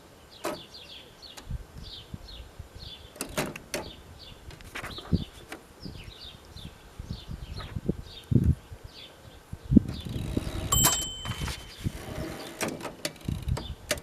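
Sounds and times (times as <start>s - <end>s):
bird chirping: 0.2s - 12.6s.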